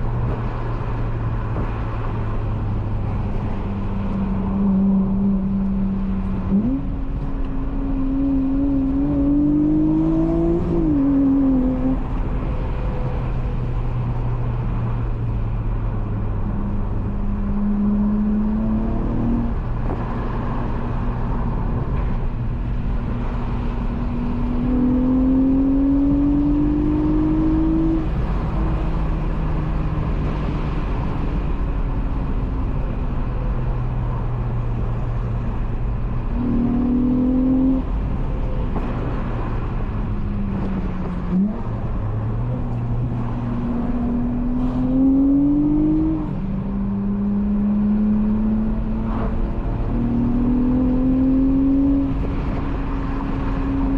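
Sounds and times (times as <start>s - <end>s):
car engine accelerating through gears: 0.0s - 53.9s.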